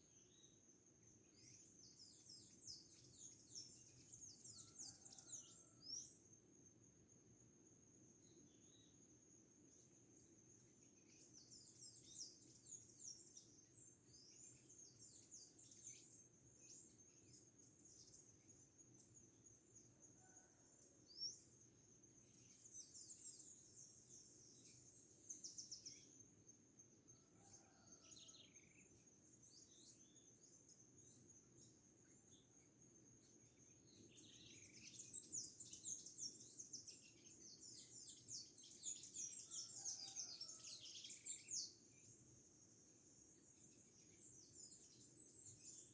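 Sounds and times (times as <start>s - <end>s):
small birds chirping: 28.4s - 45.9s.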